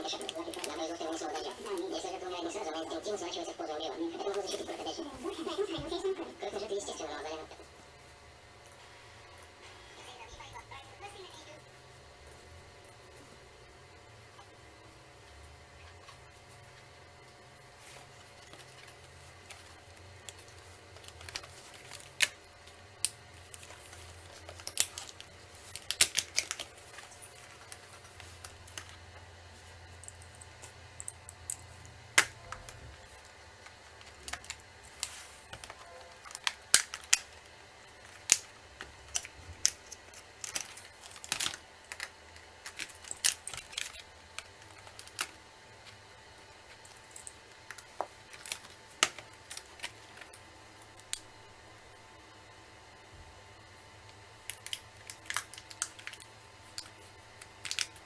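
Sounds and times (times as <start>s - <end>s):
clicks of plastic laptop parts: 24.4s - 29.0s, 31.0s - 32.8s, 33.6s - 37.4s, 54.4s - 58.0s.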